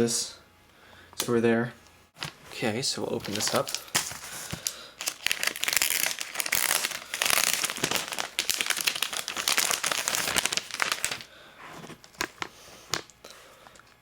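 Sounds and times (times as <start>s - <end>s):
plastic and cardboard crinkling: 2.2s - 13.1s.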